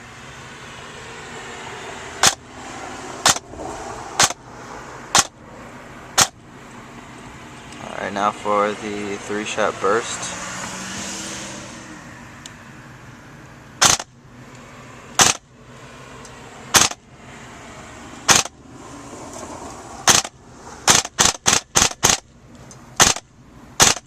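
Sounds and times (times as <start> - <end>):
airsoft gun firing bursts: 13.8 - 14.1, 15.2 - 15.4, 16.8 - 17.0, 20.1 - 20.3, 20.9 - 22.2, 23.0 - 23.2, 23.8 - 24.0.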